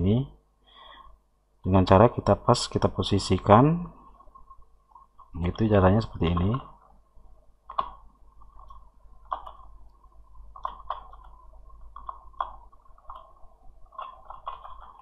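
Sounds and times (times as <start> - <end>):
low steady hum: 0.0 - 15.0
computer mouse clicks: 7.6 - 15.0.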